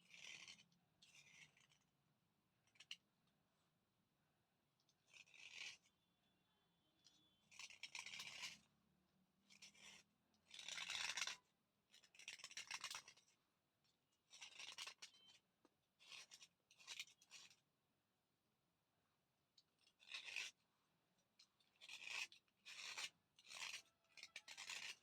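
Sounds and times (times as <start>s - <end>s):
slate pencil scraping: 0.0s - 1.9s, 4.9s - 8.8s, 9.4s - 13.4s, 14.2s - 15.3s, 16.0s - 17.6s, 19.8s - 20.6s, 21.5s - 25.0s.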